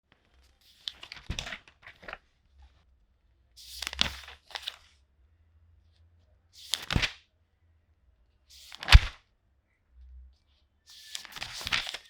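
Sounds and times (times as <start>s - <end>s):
paper pages turning: 0.7s - 2.2s, 3.6s - 4.9s, 6.6s - 7.2s, 8.6s - 9.2s, 10.9s - 12.0s.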